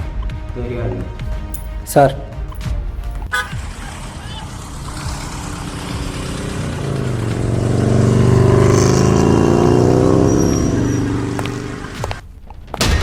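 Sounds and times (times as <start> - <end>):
motor vehicle engine: 2.4 - 12.4.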